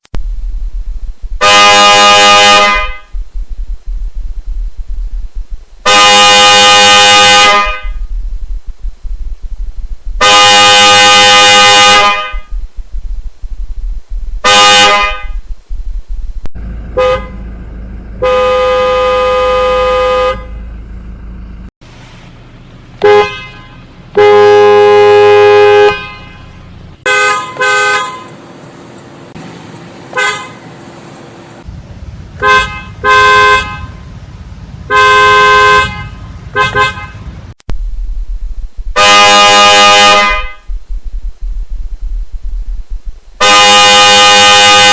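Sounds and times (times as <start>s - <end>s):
car horn blasts: 1.4s - 3.2s, 5.8s - 8.2s, 10.2s - 12.6s, 14.4s - 15.4s, 16.6s - 21.5s, 23.0s - 28.4s, 32.4s - 33.9s, 34.9s - 37.3s, 39.0s - 40.8s, 43.4s - 44.9s.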